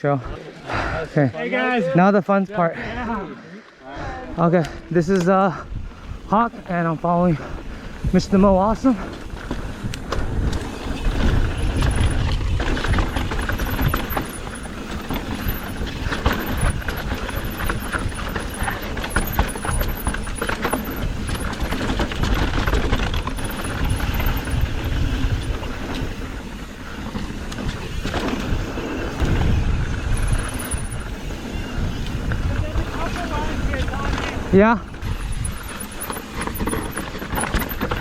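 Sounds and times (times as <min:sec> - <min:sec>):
wind rumbling on microphone: 0:05.6 - 0:38.0
bike rattling: 0:05.7 - 0:38.0
tyres rolling over dirt and rocks: 0:08.5 - 0:38.0.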